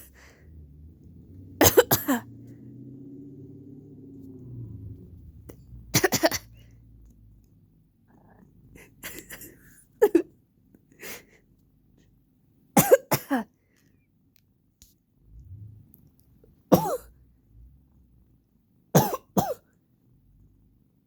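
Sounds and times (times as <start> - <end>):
person coughing: 1.6 - 2.4, 6.0 - 6.6, 12.8 - 13.5, 16.7 - 17.1, 19.0 - 19.6.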